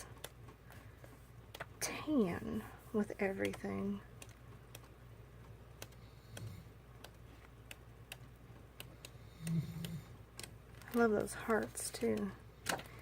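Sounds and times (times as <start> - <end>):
faint low hum: 0.0 - 13.0
paper clicks and taps: 10.3 - 13.0.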